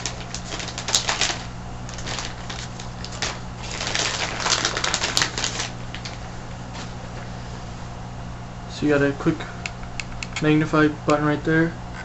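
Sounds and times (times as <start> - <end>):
packaging crinkling and clicking: 0.0 - 6.2
low electrical hum: 0.0 - 12.0.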